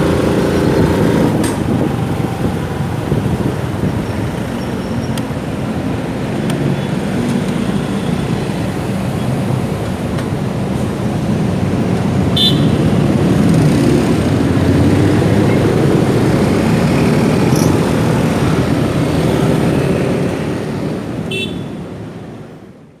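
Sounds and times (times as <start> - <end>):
road noise: 0.0 - 23.0
high horn toots: 21.3 - 21.8.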